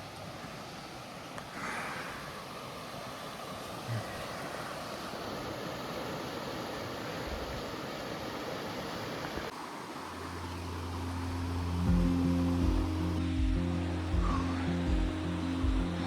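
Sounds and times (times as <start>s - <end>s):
rushing outdoor noise: 0.0s - 16.0s
low background music: 10.2s - 16.0s.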